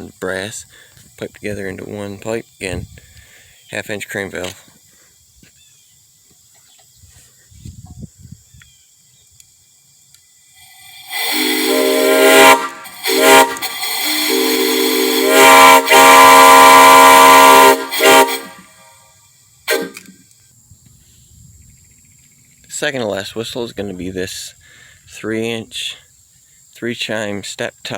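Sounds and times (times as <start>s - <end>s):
exhaust whistle chord blasts: 10.7s - 19.0s, 19.7s - 20.1s.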